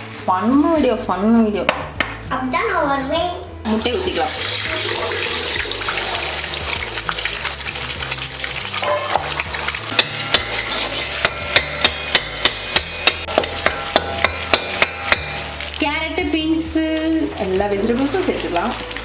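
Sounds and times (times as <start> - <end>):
egg sizzling in hot oil: 4.0 - 16.0, 16.6 - 19.0
spatula tapping pan: 8.9 - 15.6.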